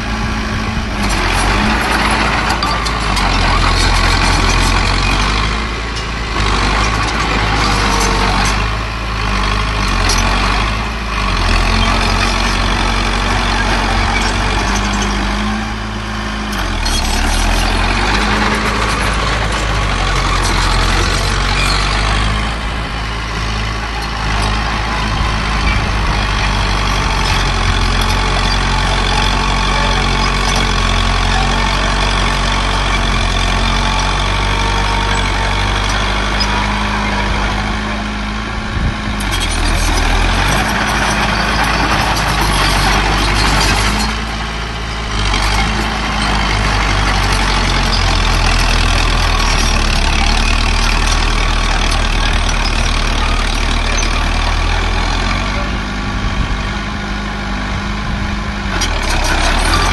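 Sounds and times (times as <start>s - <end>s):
heavy diesel engine running: 0.0s - 59.9s.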